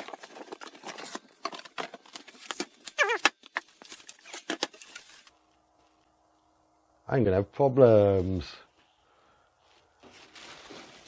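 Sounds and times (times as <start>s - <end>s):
cardboard box rustling: 0.0s - 2.9s.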